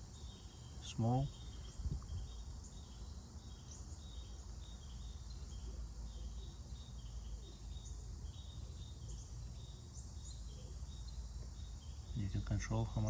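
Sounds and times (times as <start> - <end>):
insects chirping: 0.0 - 13.0.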